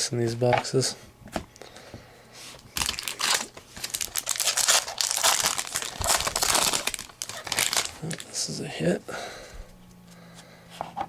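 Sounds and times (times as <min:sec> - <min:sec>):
wrapper tearing and crinkling: 0:02.7 - 0:08.4.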